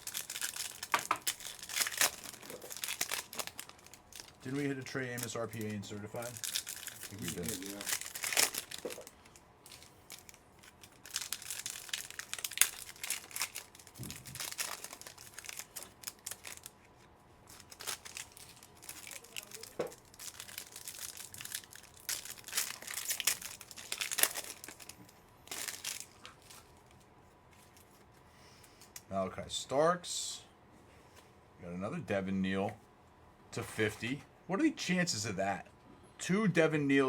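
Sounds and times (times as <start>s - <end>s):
card pack wrappers crinkling and tearing: 0.0s - 28.1s.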